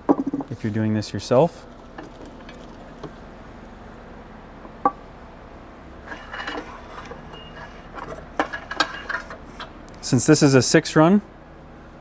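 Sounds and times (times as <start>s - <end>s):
metal parts clinking and rattling: 6.1s - 9.7s.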